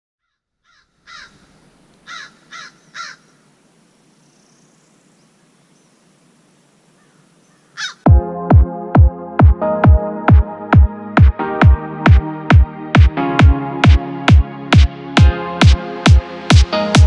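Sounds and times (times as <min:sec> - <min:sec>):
crow cawing: 0:00.2 - 0:03.4, 0:07.0 - 0:08.1
faint background hiss: 0:00.8 - 0:08.0.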